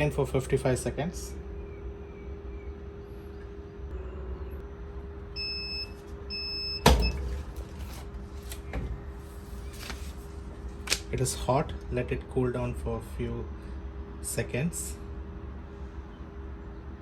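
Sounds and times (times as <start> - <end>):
steady hum: 0.0 - 17.0
heat press opening clunk: 6.8 - 9.0.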